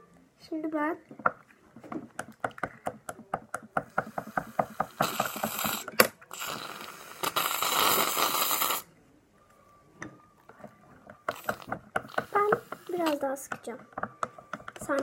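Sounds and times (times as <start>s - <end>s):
foam spraying hiss: 4.1s - 8.8s
aerosol can ball rattling: 11.3s - 13.2s.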